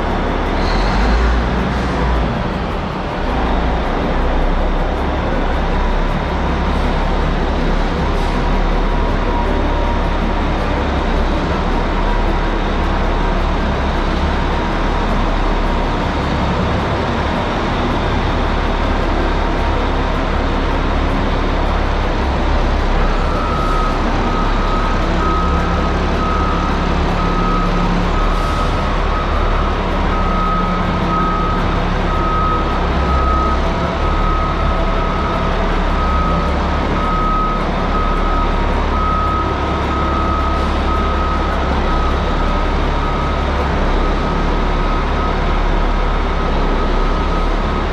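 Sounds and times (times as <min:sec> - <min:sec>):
diesel engine rumbling: 0:00.0 - 0:47.9
backup alarm beeping: 0:23.1 - 0:43.6.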